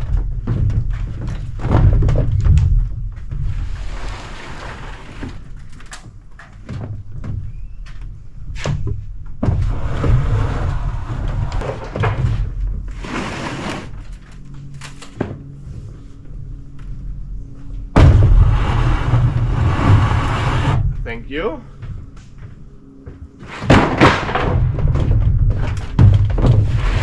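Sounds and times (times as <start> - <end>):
roof panels knocking and thudding: 0.0 - 7.5, 8.5 - 14.0, 23.6 - 27.0
low rumbling background: 0.0 - 27.0.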